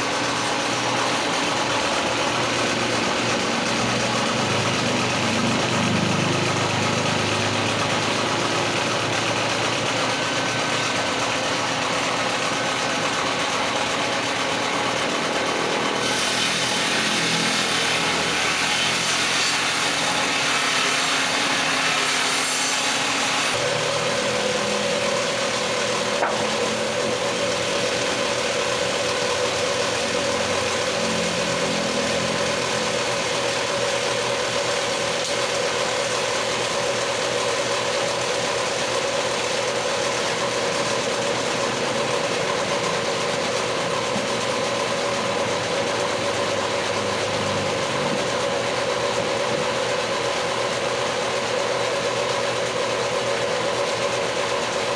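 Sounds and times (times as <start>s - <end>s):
power tool whining: 0.0s - 54.9s.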